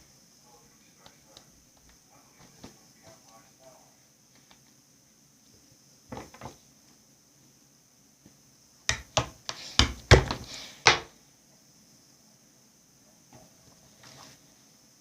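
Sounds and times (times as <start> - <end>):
sharp knocks of hard objects: 8.9 - 11.1.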